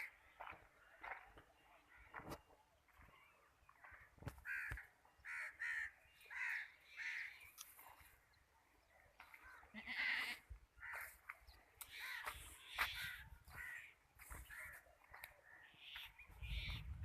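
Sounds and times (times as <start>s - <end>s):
harsh bird calls: 9.3s - 17.0s.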